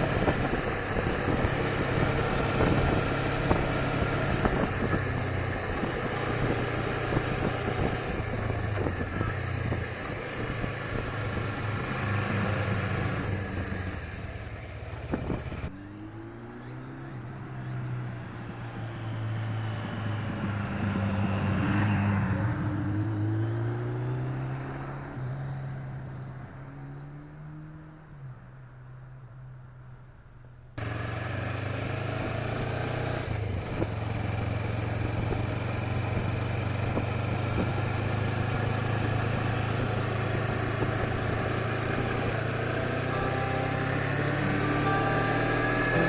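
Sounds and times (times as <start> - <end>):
wind noise on microphone: 0.0 - 14.2, 15.0 - 15.7
motorcycle engine running: 0.0 - 16.0, 30.8 - 46.0.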